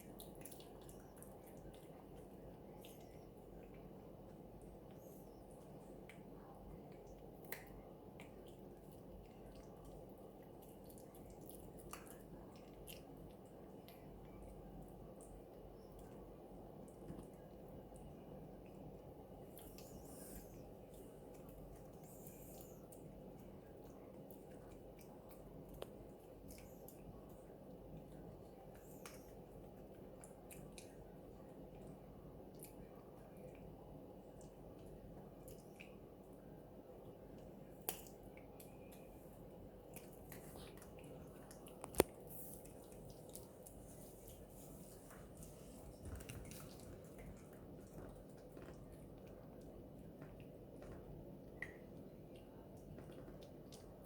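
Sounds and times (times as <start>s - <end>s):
steady low hum: 0.0s - 54.0s
dog gnawing chew stick: 37.8s - 51.1s.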